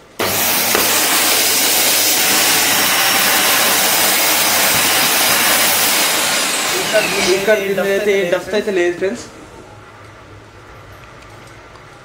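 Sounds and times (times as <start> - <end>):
vacuum cleaner motor whining: 0.0 - 9.3.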